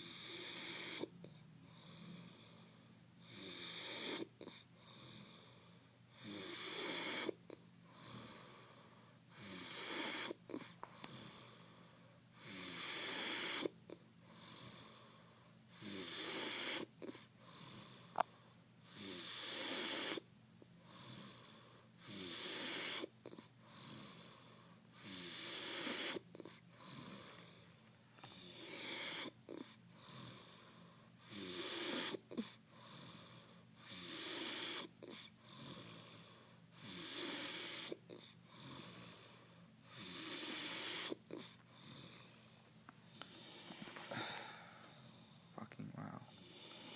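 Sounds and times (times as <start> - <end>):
man snoring: 6.2 - 7.4, 15.8 - 16.9, 18.9 - 20.2, 25.0 - 27.3, 31.2 - 33.2, 39.9 - 42.1.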